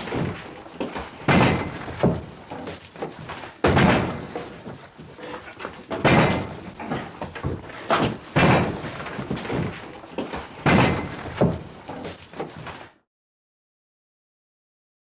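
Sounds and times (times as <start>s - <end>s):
heavy slams: 1.2s - 2.3s, 3.6s - 4.6s, 5.9s - 9.8s, 10.6s - 11.7s.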